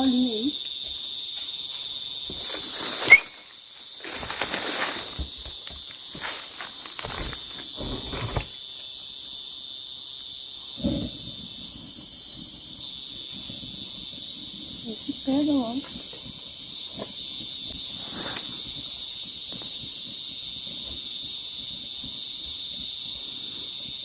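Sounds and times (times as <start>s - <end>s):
crickets and insects buzzing: 0.0s - 24.0s
rustling and clattering: 4.0s - 8.6s.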